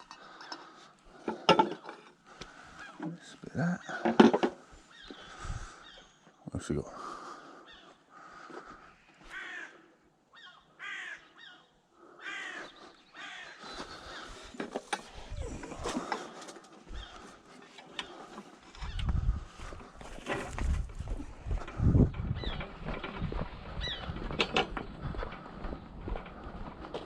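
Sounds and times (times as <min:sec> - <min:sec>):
crow cawing: 0:07.0 - 0:14.6.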